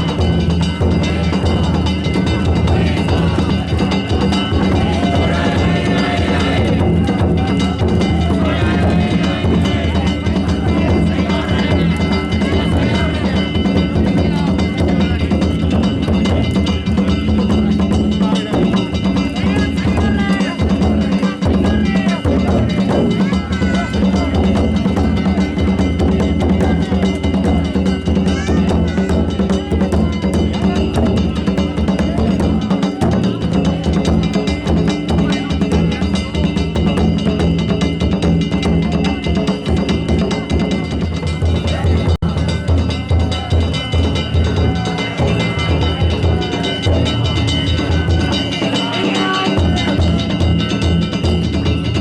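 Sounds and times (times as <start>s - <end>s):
ringing hand gongs: 0.0s - 52.0s
taiko drums beaten fast: 0.0s - 52.0s.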